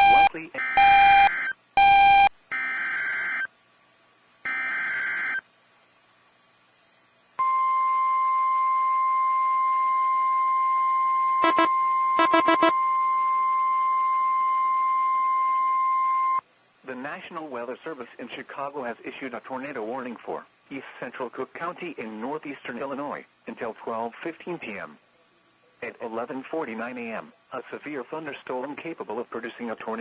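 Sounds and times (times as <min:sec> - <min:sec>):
short beeps: 0:00.0 - 0:02.3, 0:11.4 - 0:13.0
steady warning alarm tone: 0:00.0 - 0:03.5, 0:11.4 - 0:16.4.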